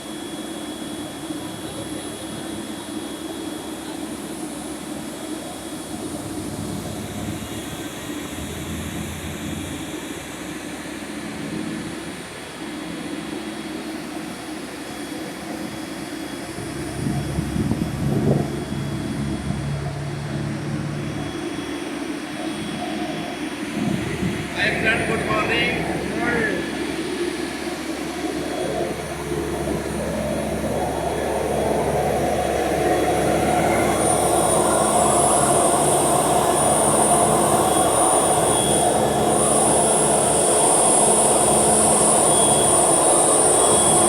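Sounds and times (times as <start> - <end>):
heavy machinery humming: 5.8 - 11.7, 14.9 - 44.0.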